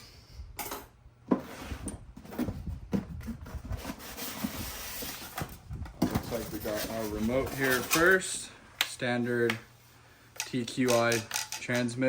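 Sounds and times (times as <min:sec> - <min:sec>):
cardboard scraping and rustling: 0:01.3 - 0:08.2.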